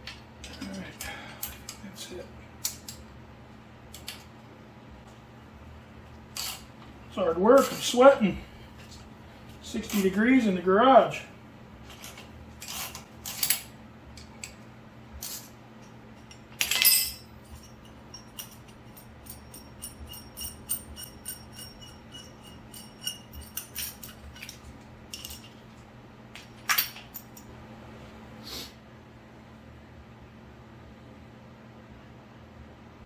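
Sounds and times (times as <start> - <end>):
metal tools clinking: 7.6 - 8.2, 16.2 - 25.6, 26.4 - 27.5.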